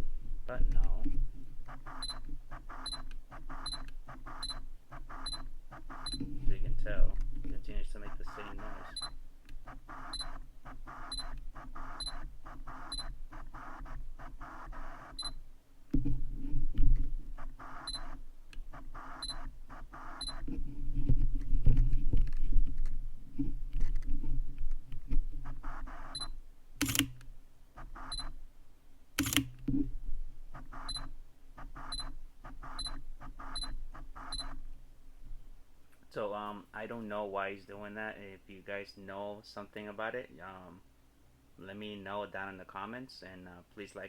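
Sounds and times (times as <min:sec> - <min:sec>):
lens focus motor whirring: 0:01.6 - 0:06.4, 0:08.1 - 0:15.4, 0:17.3 - 0:20.6, 0:25.4 - 0:28.4, 0:29.2 - 0:29.6, 0:30.6 - 0:34.6
sharp clicks: 0:01.7 - 0:06.2, 0:25.5 - 0:28.3, 0:29.2 - 0:29.6
short high focus beep: 0:08.9 - 0:09.2.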